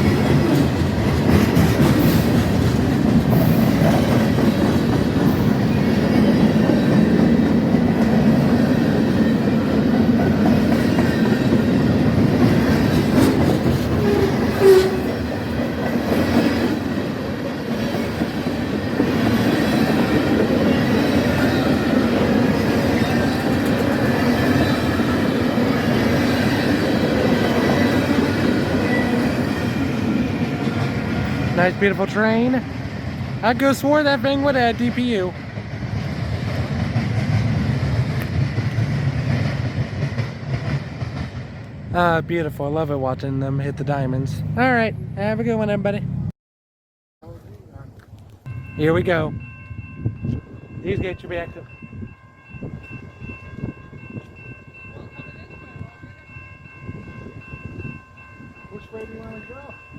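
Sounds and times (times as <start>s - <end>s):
train wheels clattering over rail joints: 0.0s - 31.4s.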